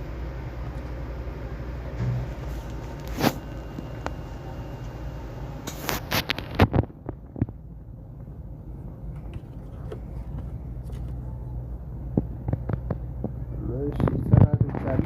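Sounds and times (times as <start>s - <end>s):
steady low hum: 0.0s - 15.0s
handling clicks and knocks: 9.1s - 11.2s.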